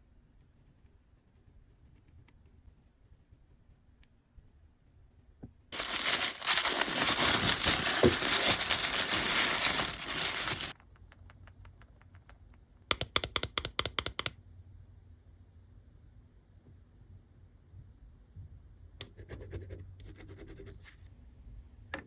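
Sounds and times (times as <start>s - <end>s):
plastic packaging crinkling: 5.8s - 10.8s.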